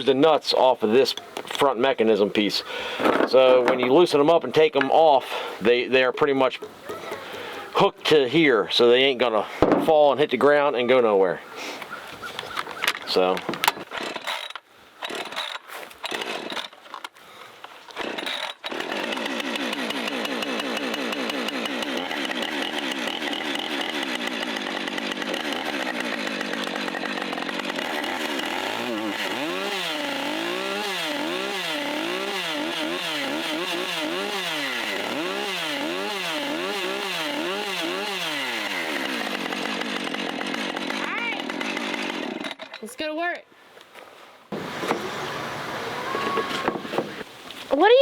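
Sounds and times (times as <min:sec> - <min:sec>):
chainsaw starting and running: 0:13.8 - 0:17.1, 0:17.9 - 0:43.0.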